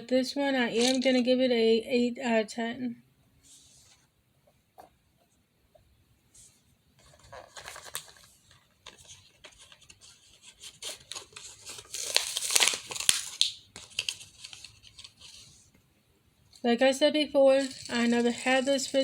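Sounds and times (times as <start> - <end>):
packaging crinkling: 7.0 - 15.6, 17.5 - 19.0.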